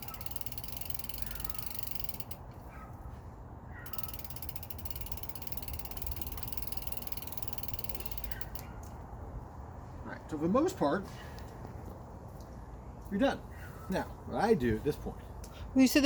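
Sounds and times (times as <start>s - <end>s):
bicycle freehub clicking: 0.0s - 2.5s, 3.8s - 8.7s.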